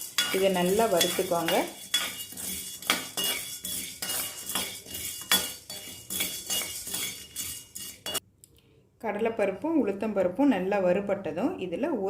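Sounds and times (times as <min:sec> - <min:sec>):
spatula scraping a pan: 0:00.0 - 0:08.2.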